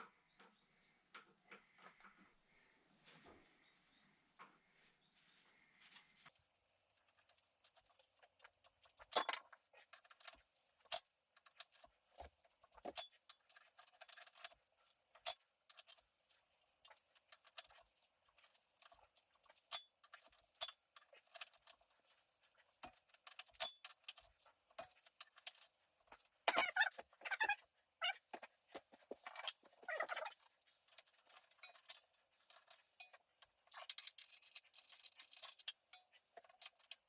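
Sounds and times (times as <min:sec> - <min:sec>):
metal tools clinking on metal: 0:08.8 - 0:16.0, 0:29.1 - 0:37.0.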